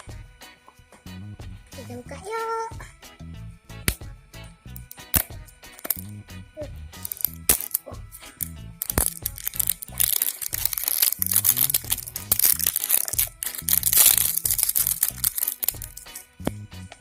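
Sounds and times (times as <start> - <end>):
background music: 0.0 - 17.0
plastic wrapping crinkling and tearing: 7.0 - 16.2.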